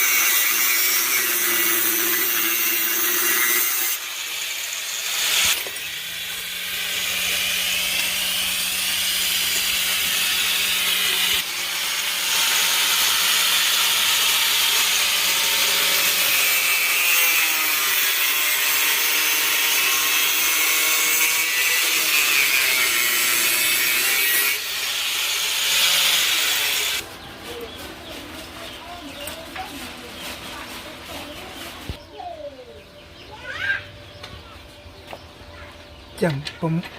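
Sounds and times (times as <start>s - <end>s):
power grinder on metal: 0.0s - 27.0s.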